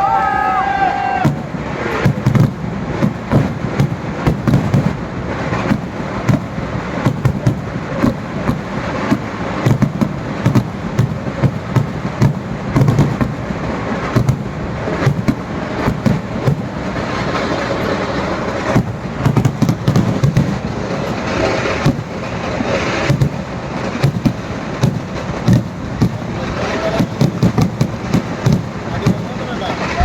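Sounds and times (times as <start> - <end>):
continuous rumble: 0.0 - 30.0
fireworks bangs and cracks: 0.0 - 30.0.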